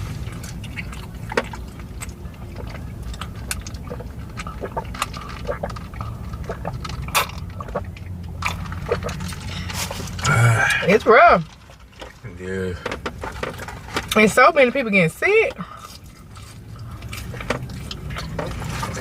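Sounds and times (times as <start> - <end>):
wet chewing and lip smacking: 0.0 - 10.8, 15.5 - 19.0.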